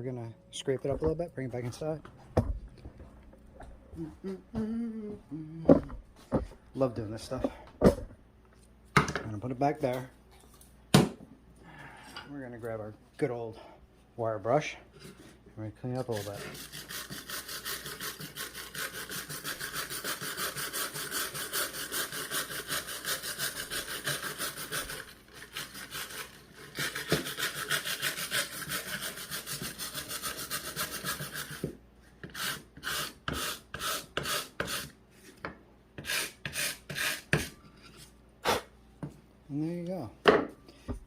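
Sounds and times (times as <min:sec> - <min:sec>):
wire brush scrubbing charred wood: 0:15.8 - 0:31.6.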